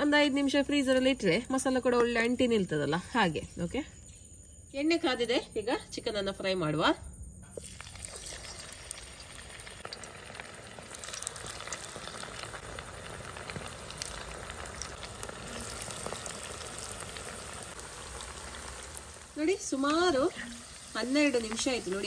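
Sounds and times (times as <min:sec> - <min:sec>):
chicken frying in hot oil: 0:07.6 - 0:22.0.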